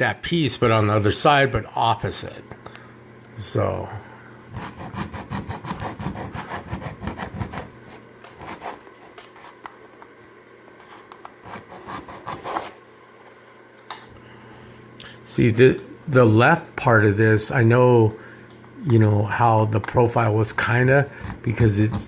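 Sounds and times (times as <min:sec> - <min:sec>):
hand tool scraping wood: 0:04.6 - 0:09.6, 0:11.0 - 0:12.8.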